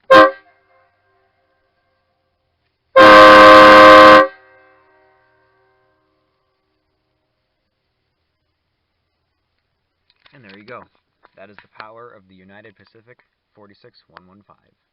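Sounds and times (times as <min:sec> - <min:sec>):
air train horn blasts: 0:00.0 - 0:01.3, 0:03.0 - 0:06.1
faint horn echo: 0:00.0 - 0:02.1, 0:02.9 - 0:06.4.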